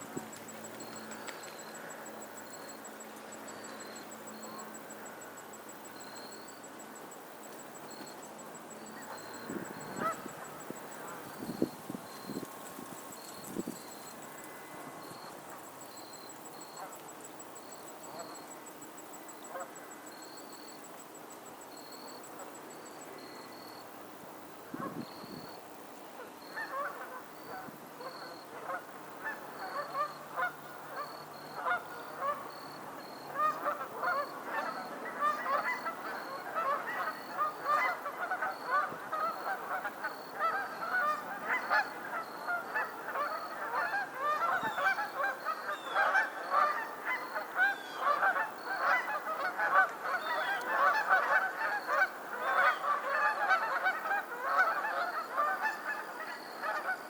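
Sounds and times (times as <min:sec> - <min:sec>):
geese honking: 0:26.6 - 0:32.6, 0:33.3 - 0:57.0.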